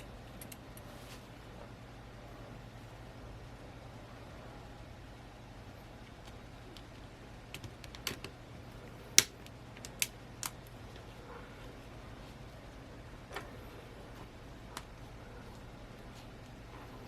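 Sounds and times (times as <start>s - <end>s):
small parts clicking and tapping: 6.1s - 8.4s.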